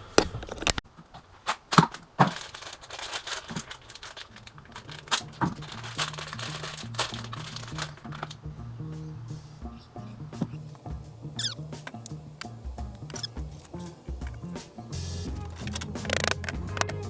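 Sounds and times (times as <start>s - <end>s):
rustling: 1.5s - 8.0s, 10.6s - 17.0s
background music with bass line: 5.2s - 17.0s
sharp clicks: 10.7s - 17.0s.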